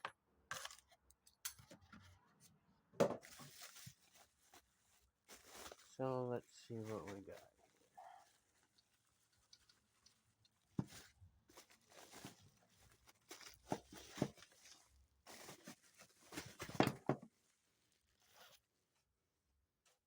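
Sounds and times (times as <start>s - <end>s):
packaging tearing and rustling: 11.0s - 17.0s.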